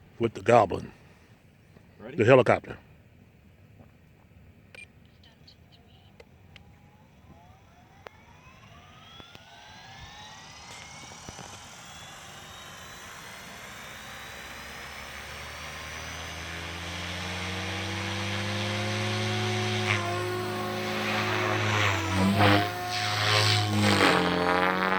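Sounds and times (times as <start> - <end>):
rotor hum: 6.1 - 24.9
electric motor whine: 6.6 - 24.9.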